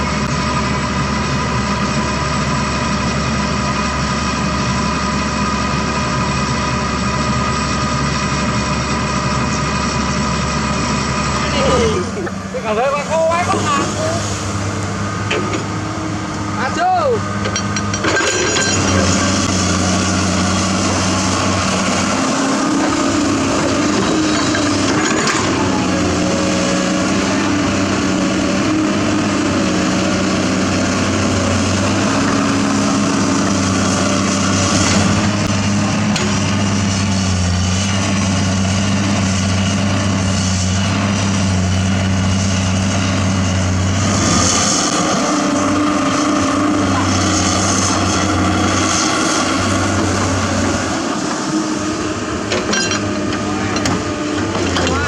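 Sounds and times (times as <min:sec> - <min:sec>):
heavy machinery diesel engine: 0:00.0 - 0:55.0.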